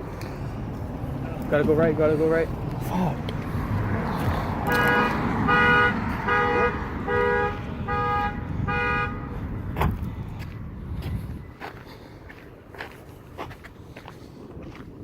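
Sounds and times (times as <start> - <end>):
car horn honks: 4.7 - 9.4.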